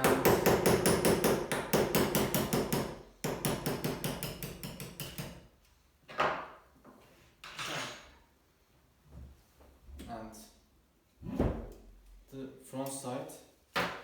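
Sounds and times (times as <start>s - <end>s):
hammer tapping on pin punch: 0.0s - 5.4s.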